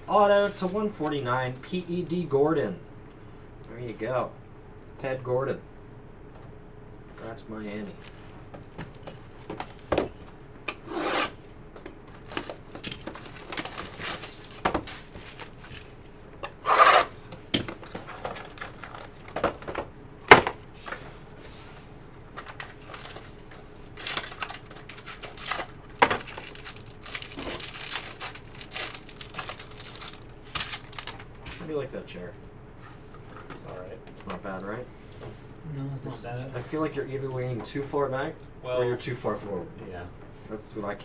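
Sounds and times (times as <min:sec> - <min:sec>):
card wrappers rustling and tearing: 0:12.1 - 0:16.2, 0:17.0 - 0:19.7, 0:22.3 - 0:31.7.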